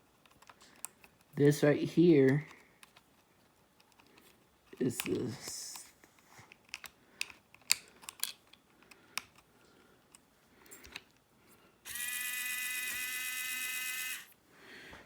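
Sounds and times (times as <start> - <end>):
plastic parts clicking: 0.0 - 1.4, 2.3 - 5.9, 6.5 - 9.5
servo electric buzz: 11.9 - 14.4.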